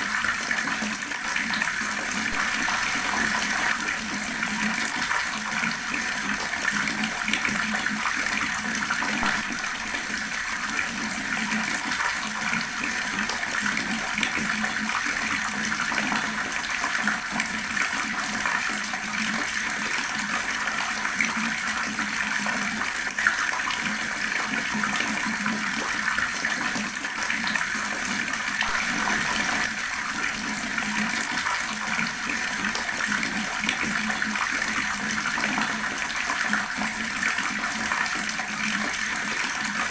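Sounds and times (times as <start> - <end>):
water tap running: 0.0 - 20.0, 21.8 - 39.9.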